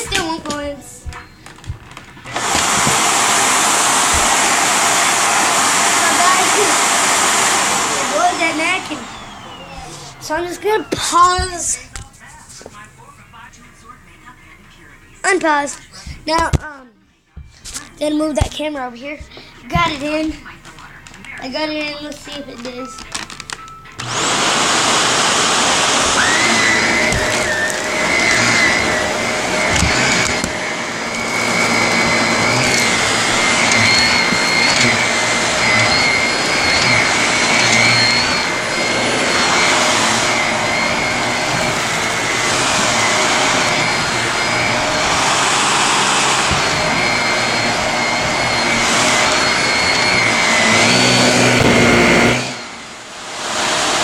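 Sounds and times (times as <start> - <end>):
vacuum cleaner running: 0.0 - 13.5, 19.1 - 54.0.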